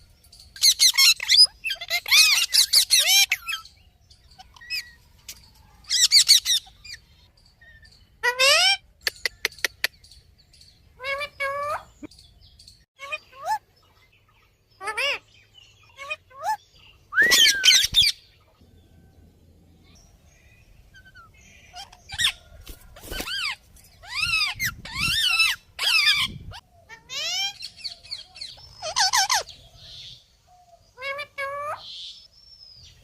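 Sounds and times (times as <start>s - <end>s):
parrot calling: 0.6s - 3.7s, 15.8s - 16.6s, 17.2s - 18.2s, 23.3s - 29.6s.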